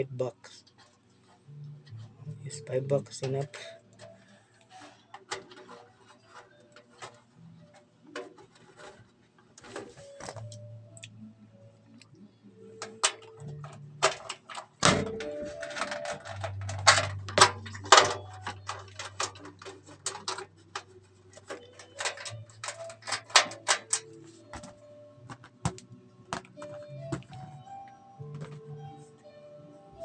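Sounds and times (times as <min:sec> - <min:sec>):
screws and metal parts clicking: 0:12.8 - 0:24.2.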